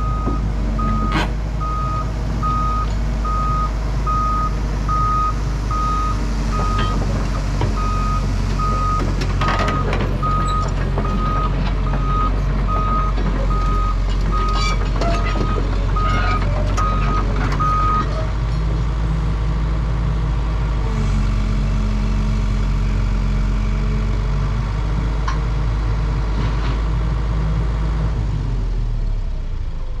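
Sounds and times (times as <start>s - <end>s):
excavator diesel engine running: 0.0s - 30.0s
metallic clanks and squeals: 9.4s - 12.2s, 13.0s - 18.4s.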